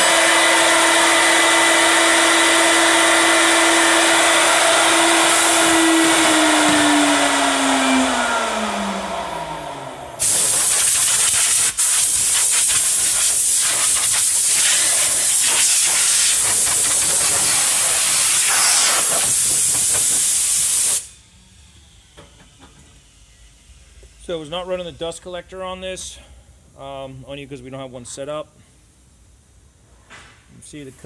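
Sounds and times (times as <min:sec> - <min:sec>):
compressed air hissing: 0:04.4 - 0:07.2, 0:10.2 - 0:21.3.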